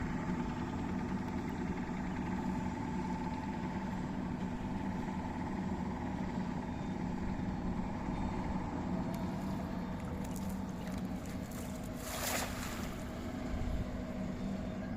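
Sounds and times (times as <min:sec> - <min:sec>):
engine humming: 0:07.7 - 0:14.9.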